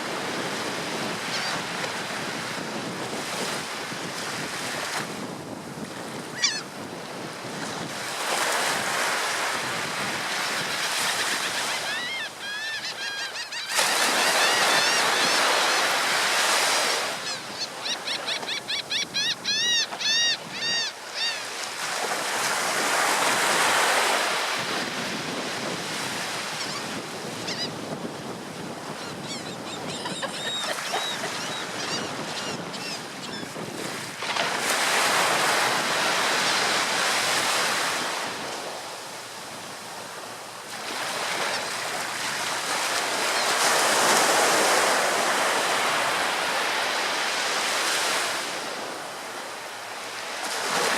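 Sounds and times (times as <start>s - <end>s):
bird crying: 6.4s - 6.7s, 11.1s - 15.9s, 17.2s - 21.5s, 29.0s - 33.5s
ocean surf breaking: 13.7s - 18.4s, 21.0s - 29.0s, 29.6s - 39.4s.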